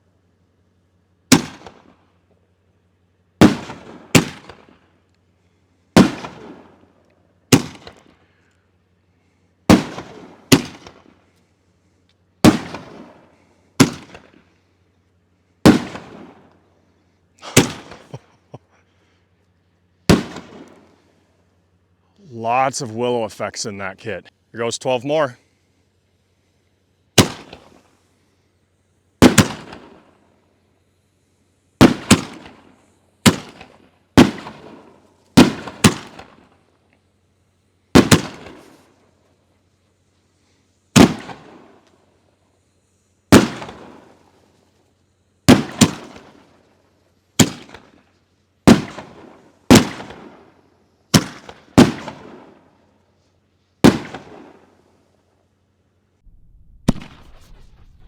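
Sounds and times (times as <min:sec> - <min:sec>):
firework shells booming: 0:56.2 - 0:58.0.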